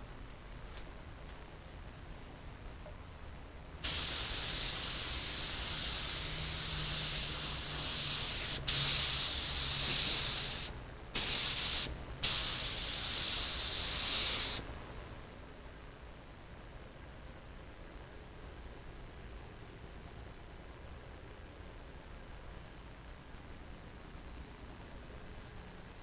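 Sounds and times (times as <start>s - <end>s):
spray paint hissing: 3.8s - 14.7s.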